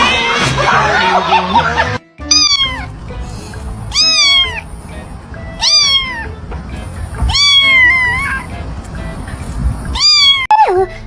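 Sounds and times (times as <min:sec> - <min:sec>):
cat meowing: 0:02.3 - 0:02.9, 0:03.9 - 0:04.6, 0:05.6 - 0:06.4, 0:07.2 - 0:08.5, 0:09.9 - 0:10.9.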